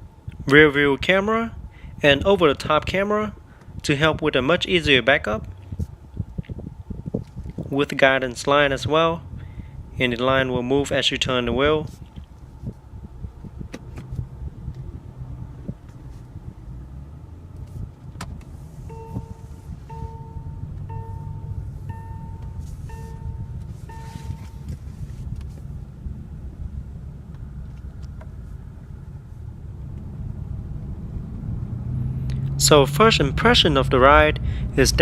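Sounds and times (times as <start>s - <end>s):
car engine and road hum: 0.0s - 35.0s
electronic car chime beeping: 18.9s - 24.8s.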